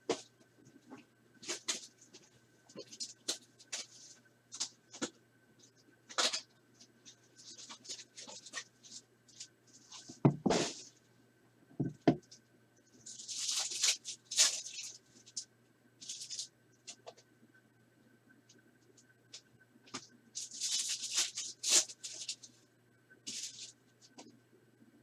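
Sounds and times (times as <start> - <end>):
card pack wrappers crinkling: 13.1 - 15.4, 16.0 - 17.0, 19.9 - 22.5, 23.3 - 23.8.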